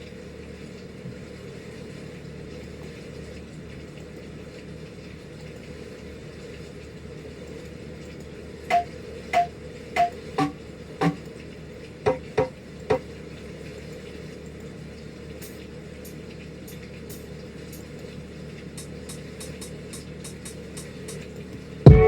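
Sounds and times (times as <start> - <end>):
drum sample hits: 8.7 - 11.2, 12.1 - 13.0.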